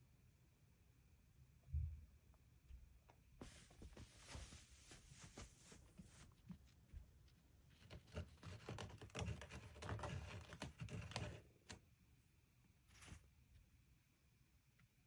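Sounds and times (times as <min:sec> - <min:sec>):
faint clicks and taps: 0:03.0 - 0:11.8.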